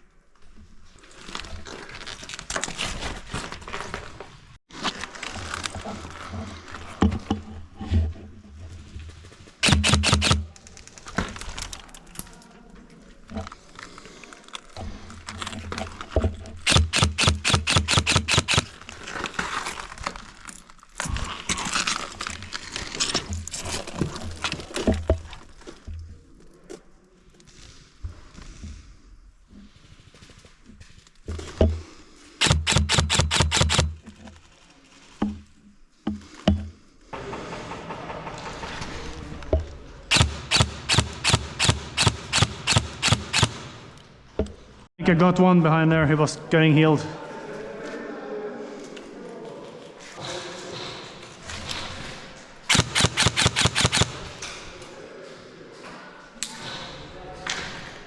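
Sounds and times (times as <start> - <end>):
airsoft guns firing bursts: 9.6 - 10.6, 16.7 - 18.8, 32.4 - 34.0, 40.1 - 44.0, 52.7 - 54.4
scattered cracks: 16.6 - 23.2, 52.7 - 54.6.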